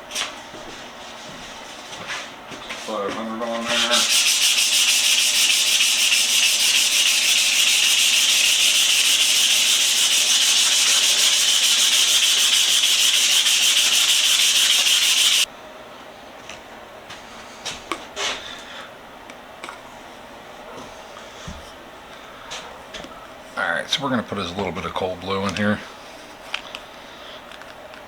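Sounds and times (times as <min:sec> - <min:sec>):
sandpaper sanding steel: 0:03.6 - 0:15.5.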